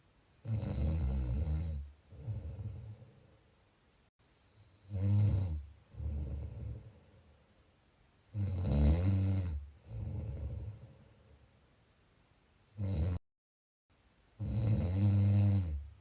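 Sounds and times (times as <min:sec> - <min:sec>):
person snoring: 0:00.4 - 0:03.2, 0:04.8 - 0:07.3, 0:08.3 - 0:11.1, 0:12.8 - 0:13.2, 0:14.4 - 0:15.9
quiet low breath: 0:01.1 - 0:03.6, 0:05.6 - 0:07.6, 0:09.8 - 0:11.6.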